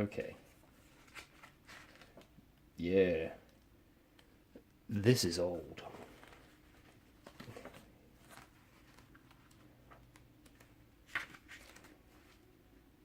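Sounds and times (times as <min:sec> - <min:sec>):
paper pages rustling: 0:00.5 - 0:02.3, 0:05.9 - 0:12.4.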